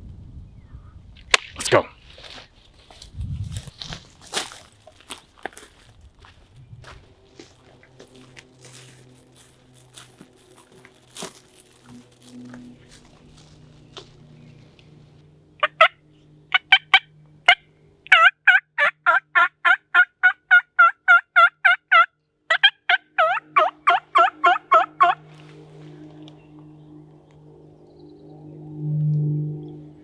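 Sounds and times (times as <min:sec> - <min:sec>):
turkey call hen yelps: 0:15.6 - 0:25.2.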